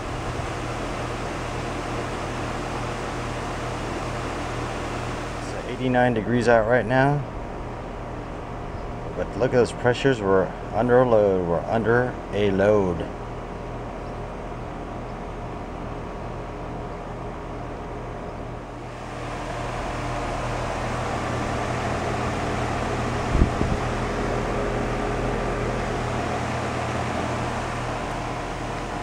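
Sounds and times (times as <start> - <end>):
compressor hum: 0.0 - 29.0
outdoor fan rushing: 0.0 - 29.0.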